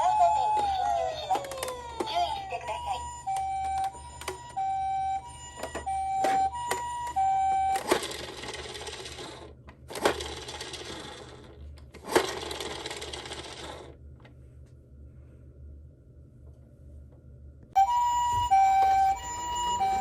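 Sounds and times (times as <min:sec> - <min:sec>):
toy siren two alternating tones: 0:00.0 - 0:08.3, 0:17.8 - 0:20.0
toy car rattling down a slope: 0:07.8 - 0:14.0.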